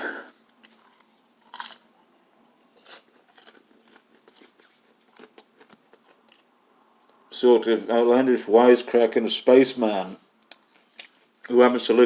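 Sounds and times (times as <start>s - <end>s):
chewing: 0.5s - 1.9s, 2.8s - 7.2s
popcorn crunching: 0.5s - 7.2s.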